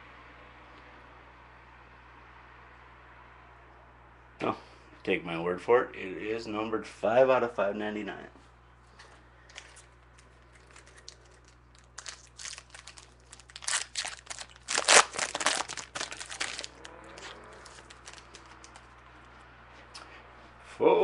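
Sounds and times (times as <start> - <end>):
wrapper tearing and crinkling: 10.4 - 19.0.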